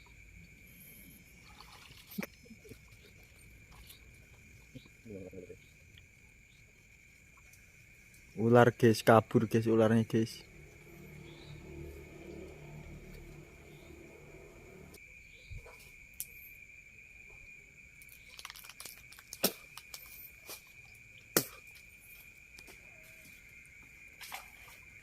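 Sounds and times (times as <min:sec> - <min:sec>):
crickets trilling: 0:00.0 - 0:25.0
low rumble: 0:10.4 - 0:15.0.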